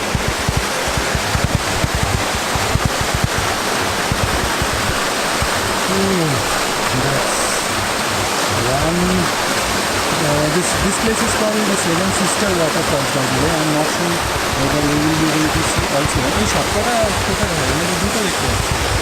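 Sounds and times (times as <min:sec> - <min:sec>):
waterfall rushing: 0:00.0 - 0:19.0
people talking: 0:05.9 - 0:07.7, 0:08.5 - 0:09.3, 0:10.1 - 0:18.7.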